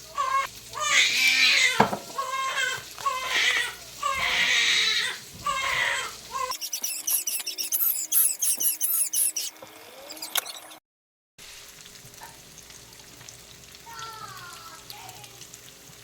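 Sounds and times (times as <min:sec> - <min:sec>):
child crying and whining: 0:00.0 - 0:06.6, 0:13.8 - 0:15.4
chicken sizzling in a pan: 0:00.0 - 0:10.1, 0:11.4 - 0:16.0.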